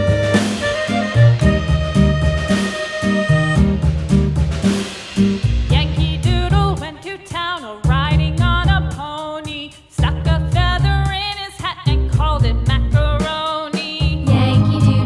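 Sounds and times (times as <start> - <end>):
song with beat: 0.0 - 7.9, 12.8 - 15.0.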